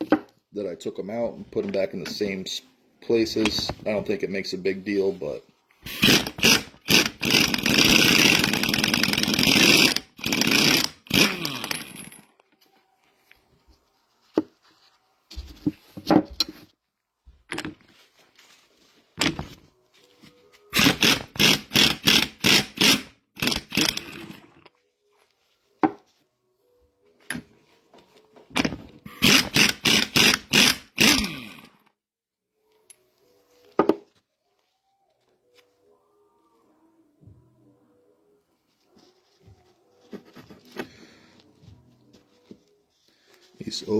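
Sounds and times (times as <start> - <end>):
power driver whirring: 5.9 - 12.0, 20.7 - 24.6, 29.1 - 31.7
metal parts clicking and knocking: 5.9 - 12.4, 28.6 - 31.8.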